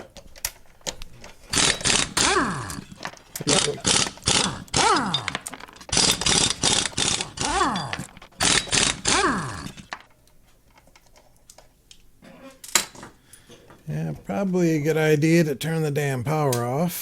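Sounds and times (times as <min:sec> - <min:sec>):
screwdriver clicks: 0:00.0 - 0:09.8.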